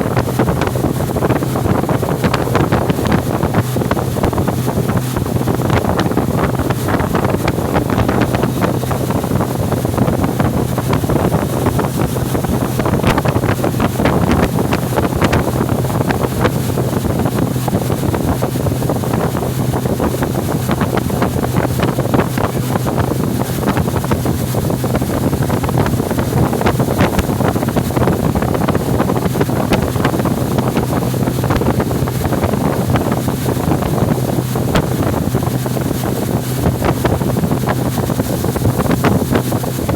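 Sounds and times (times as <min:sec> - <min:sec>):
boat motor humming: 0:00.0 - 0:39.9
water rushing: 0:00.0 - 0:39.9
wind buffeting microphone: 0:00.0 - 0:39.9.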